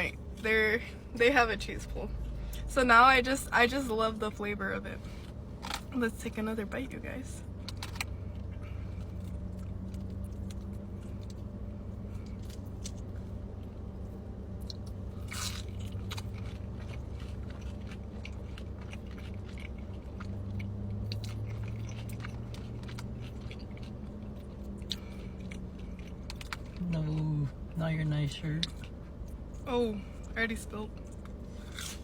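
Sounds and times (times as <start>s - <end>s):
low hum: 0.0s - 32.0s
crunching and chewing food: 5.0s - 5.9s, 7.4s - 32.0s.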